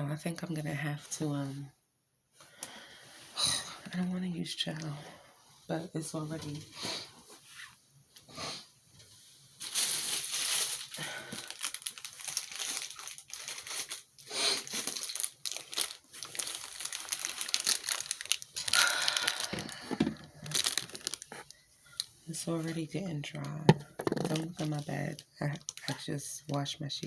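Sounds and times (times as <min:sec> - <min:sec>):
crinkling and rustling: 0:08.9 - 0:26.7.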